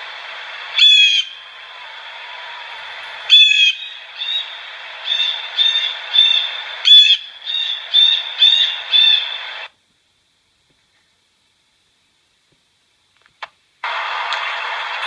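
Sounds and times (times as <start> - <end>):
steady background hiss: 0.0 - 15.0
bird giving harsh calls: 0.8 - 1.4, 3.3 - 9.7.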